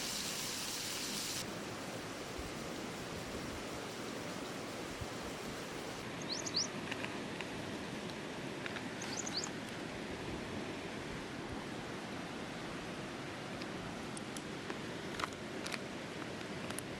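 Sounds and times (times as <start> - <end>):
bird chirping: 6.2 - 6.7, 9.0 - 9.5.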